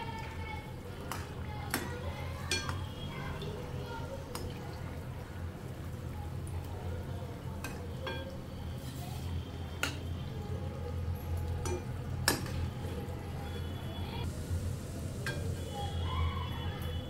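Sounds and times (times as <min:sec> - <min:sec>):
metal spoon clinking on pan: 0:01.1 - 0:02.8, 0:07.6 - 0:08.4, 0:11.6 - 0:12.6.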